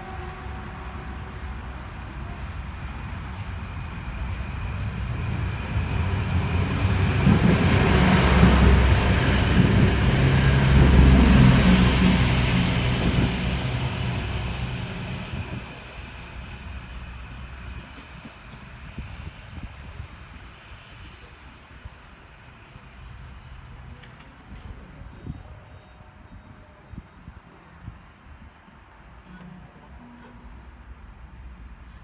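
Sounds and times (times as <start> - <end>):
train passing with low rumble: 0.0 - 32.0.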